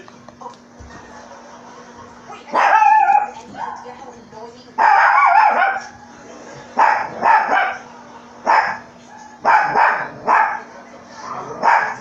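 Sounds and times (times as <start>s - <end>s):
dog barking: 2.4s - 3.4s, 4.8s - 6.0s, 6.8s - 10.7s, 11.3s - 12.0s.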